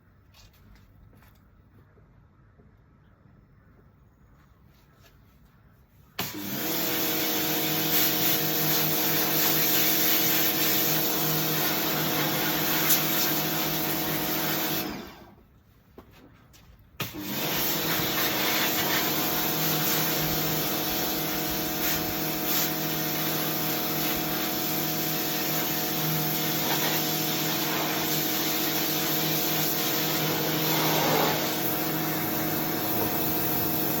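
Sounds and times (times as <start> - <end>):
pressure washer running: 6.2 - 15.3, 17.0 - 34.0.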